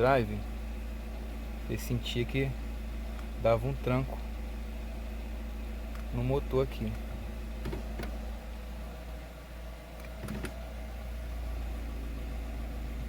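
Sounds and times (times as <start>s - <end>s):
car engine idling: 0.0s - 13.0s
gear shifter clicks: 5.9s - 6.2s, 6.8s - 8.2s, 10.0s - 10.6s.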